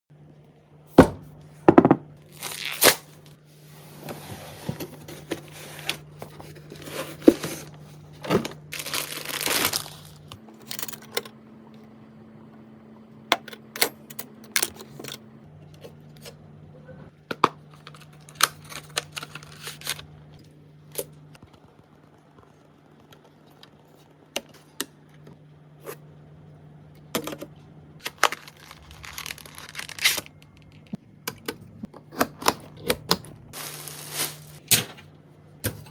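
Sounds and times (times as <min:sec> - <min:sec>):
plastic wrapping crinkling and tearing: 0:02.3 - 0:03.2, 0:08.4 - 0:10.4, 0:17.8 - 0:20.0, 0:28.0 - 0:30.8, 0:33.5 - 0:34.6.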